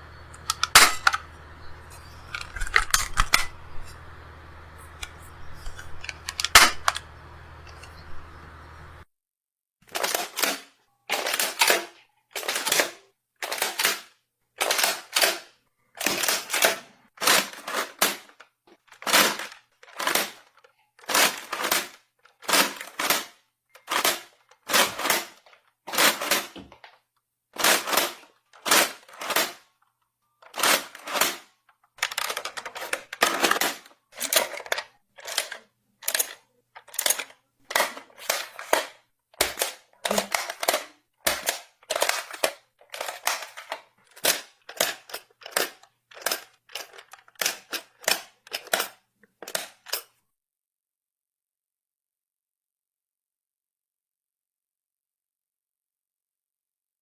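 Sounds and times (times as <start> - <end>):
gun reload clicks: 0.3 - 1.2, 2.0 - 3.9, 5.0 - 7.1.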